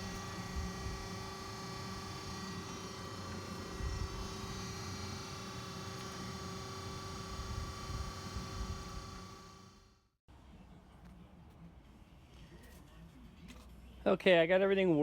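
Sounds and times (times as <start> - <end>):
surface grinder humming: 0.0 - 9.8.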